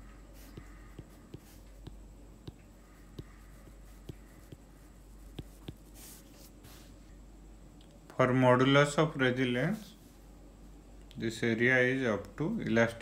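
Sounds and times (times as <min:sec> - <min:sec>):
taps and scratches of writing: 0:00.0 - 0:06.8
steady low hum: 0:00.0 - 0:13.0.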